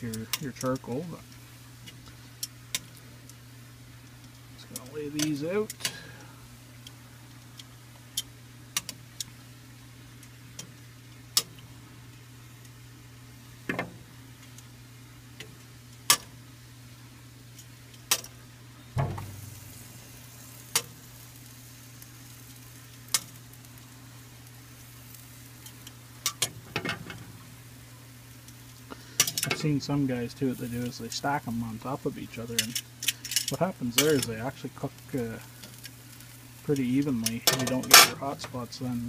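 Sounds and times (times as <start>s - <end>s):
steady low hum: 0.0s - 39.0s
clicks on metal grill grate: 4.1s - 9.3s, 17.5s - 18.4s, 25.1s - 27.4s, 28.9s - 29.8s, 32.5s - 34.5s, 35.6s - 38.6s.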